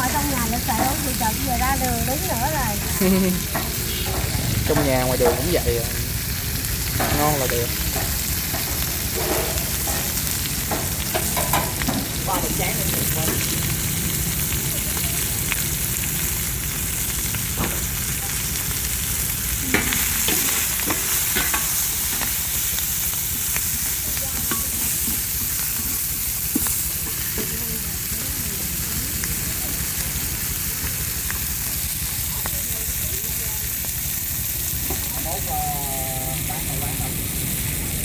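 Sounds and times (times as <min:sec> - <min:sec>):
low rumble: 0:00.0 - 0:18.0
food sizzling in a pan: 0:00.0 - 0:38.0
utensils scraping a pan: 0:00.2 - 0:13.5, 0:19.7 - 0:22.7.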